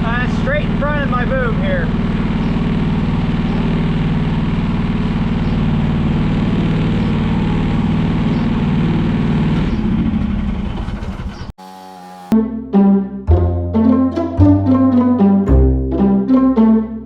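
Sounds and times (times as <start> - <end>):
excavator engine running: 0.0 - 10.6.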